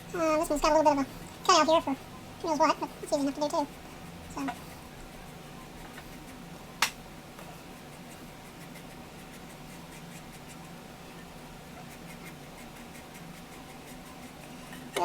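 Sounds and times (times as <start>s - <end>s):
low hum and hiss: 0.0s - 15.0s
cotton swab scratching paper: 2.6s - 6.5s, 7.7s - 10.8s, 11.8s - 14.5s.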